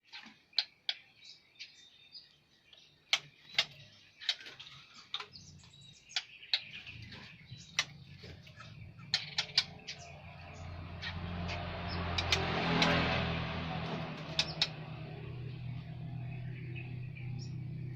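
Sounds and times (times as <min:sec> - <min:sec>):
bird chip calls: 0:00.0 - 0:13.0, 0:13.8 - 0:17.9
bird chirps: 0:00.0 - 0:17.9
low engine hum: 0:05.3 - 0:17.9.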